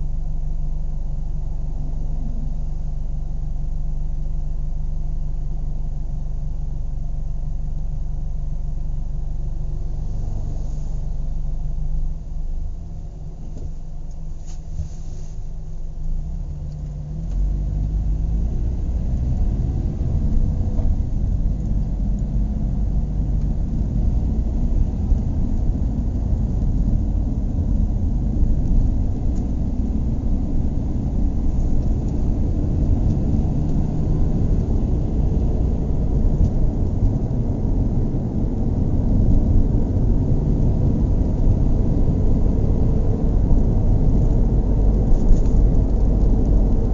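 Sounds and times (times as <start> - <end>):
car engine rumbling and revving: 0.0 - 46.9.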